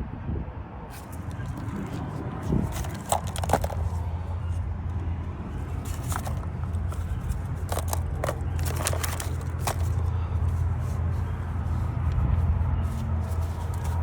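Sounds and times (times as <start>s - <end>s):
handling noises: 0.9s - 14.0s.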